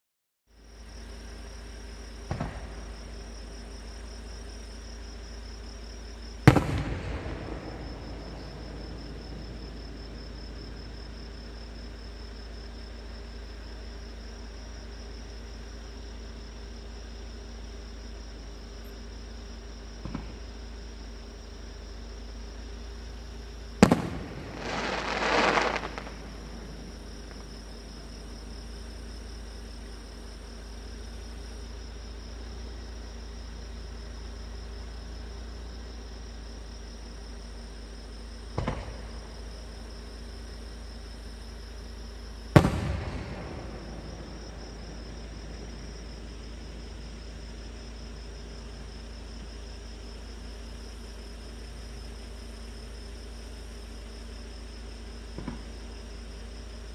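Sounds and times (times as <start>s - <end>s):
high insect trill: 0.5s - 56.9s
echoing rumble: 2.2s - 3.6s, 6.4s - 11.5s, 23.8s - 28.5s, 42.6s - 47.2s
faint thump: 2.3s - 2.8s, 20.0s - 20.4s, 38.6s - 39.2s, 55.4s - 55.7s
firework crackling: 2.3s - 3.6s, 6.5s - 10.6s, 23.8s - 28.2s, 42.6s - 46.0s.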